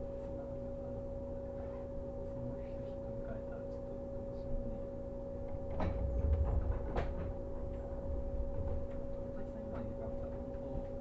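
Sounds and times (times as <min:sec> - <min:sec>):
electric train motor hum: 0:00.0 - 0:11.0
low rumble: 0:04.6 - 0:11.0.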